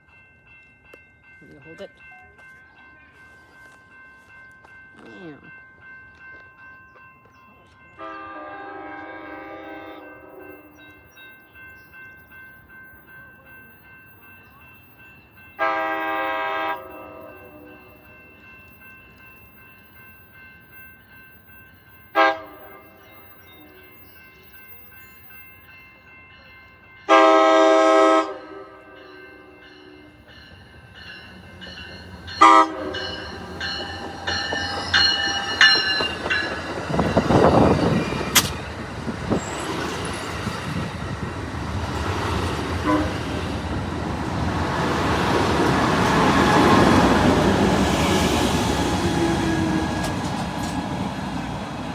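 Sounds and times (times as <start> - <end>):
train horn blasts: 8.0 - 10.8, 15.6 - 17.9, 22.2 - 23.9, 27.1 - 30.2, 32.3 - 33.5, 42.8 - 43.4
train wheels rumbling and clattering: 30.2 - 51.9.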